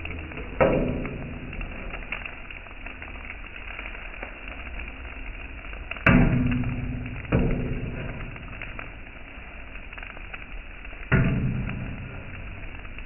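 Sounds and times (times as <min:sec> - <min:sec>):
food sizzling on hot plate: 0:00.0 - 0:13.0
metal blades clanging on griddle: 0:11.1 - 0:13.0.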